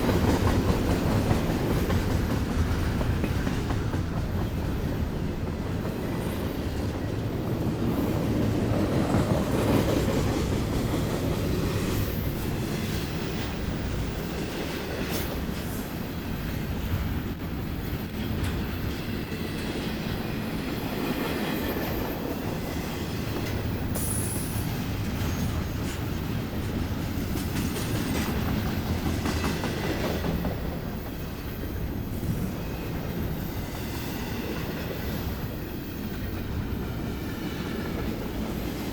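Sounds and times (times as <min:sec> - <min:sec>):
train cars rumbling on rails: 0:00.0 - 0:38.9
wheels clacking over rail joints: 0:16.4 - 0:38.9.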